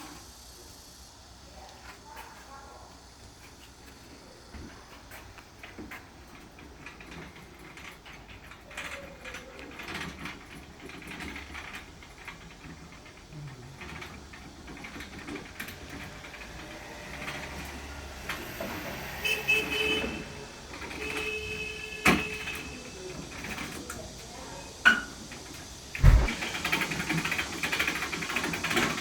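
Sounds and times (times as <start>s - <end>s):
winch motor whine: 11.4s - 23.3s.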